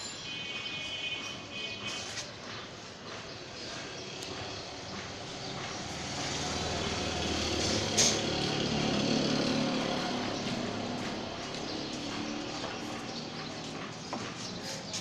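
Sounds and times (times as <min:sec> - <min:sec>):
vehicle engine running: 0:04.3 - 0:15.0.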